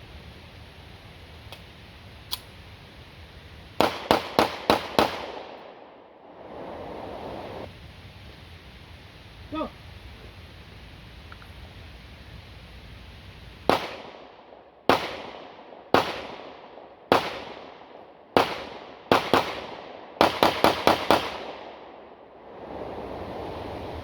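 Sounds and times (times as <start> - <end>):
pistol shots echoing: 3.8 - 6.0, 13.7 - 22.1.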